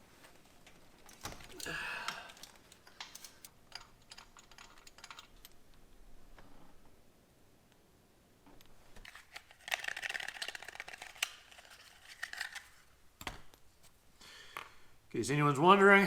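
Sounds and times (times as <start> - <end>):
light clicks and taps of metal parts: 0.6 - 5.8.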